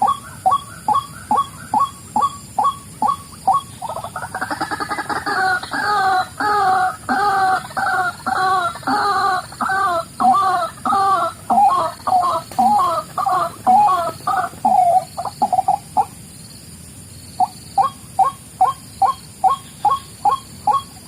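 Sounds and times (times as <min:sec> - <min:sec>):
waterhen clucking calls: 0:00.0 - 0:16.2, 0:17.4 - 0:21.0.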